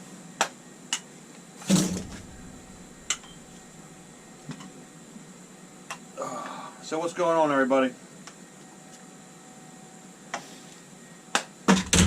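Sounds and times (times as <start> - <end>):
tools clattering: 1.7 - 3.7.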